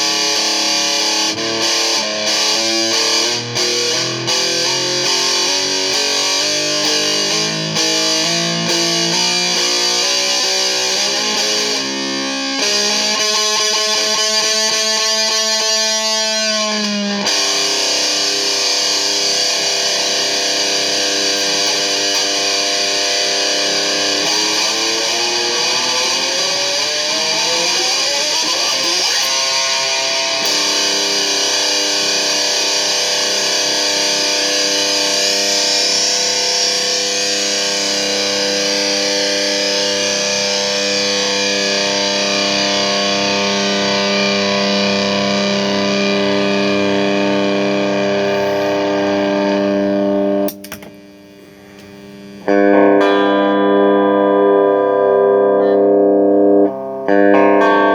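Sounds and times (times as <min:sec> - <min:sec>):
distorted electric guitar: 0:00.0 - 0:57.9.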